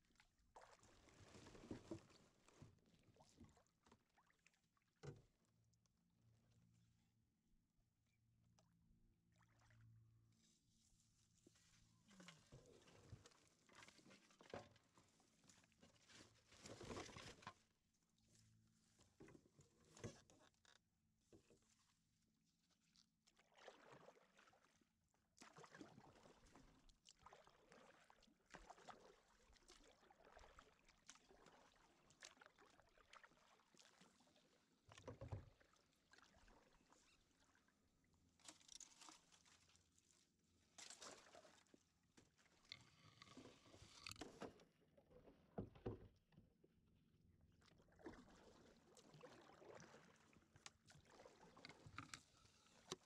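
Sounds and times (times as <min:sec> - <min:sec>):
paddle splashing in water: 0:23.3 - 0:24.8, 0:25.4 - 0:37.6, 0:38.4 - 0:44.6, 0:47.7 - 0:53.0.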